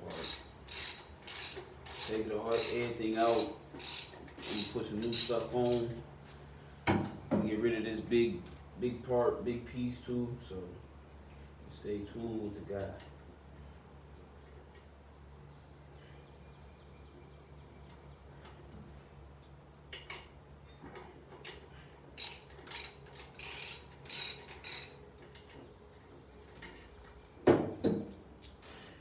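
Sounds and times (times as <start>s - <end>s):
socket ratchet clicking: 0.1s - 5.8s, 22.2s - 25.0s.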